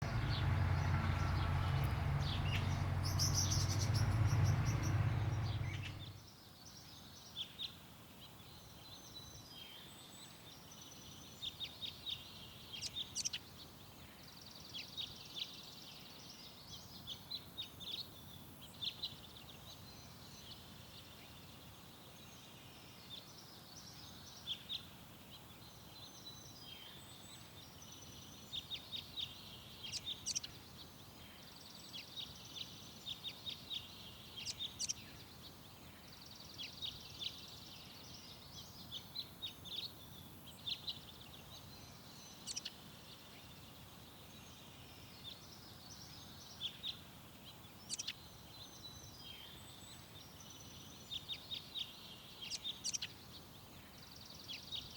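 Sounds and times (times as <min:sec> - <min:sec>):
birds chirping: 0:00.0 - 0:06.3, 0:25.6 - 0:54.9.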